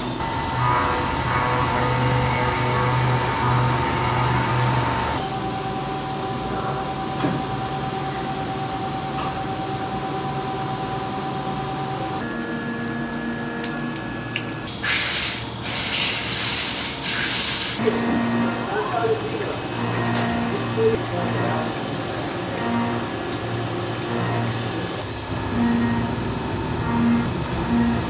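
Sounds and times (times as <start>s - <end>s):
machine humming and whining: 0.0s - 14.3s, 17.8s - 28.0s
hissing spray bursts: 14.8s - 17.8s.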